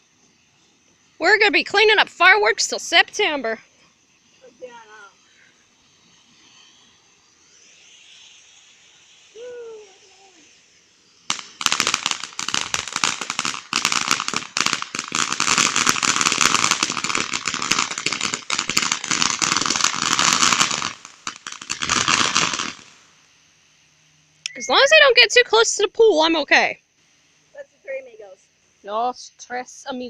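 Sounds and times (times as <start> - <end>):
firework crackling pops: 0.0 - 23.4.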